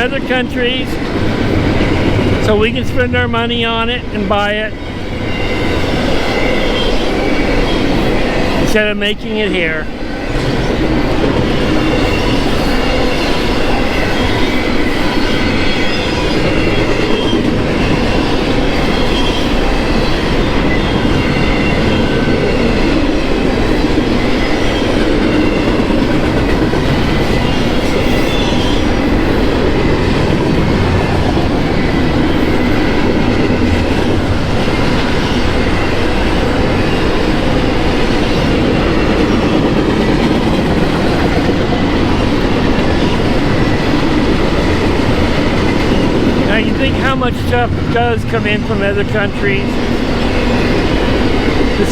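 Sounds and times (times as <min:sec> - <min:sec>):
freight train wheels rumbling: 0:00.0 - 0:51.9
high wheel squeals: 0:04.7 - 0:08.6, 0:10.0 - 0:40.2.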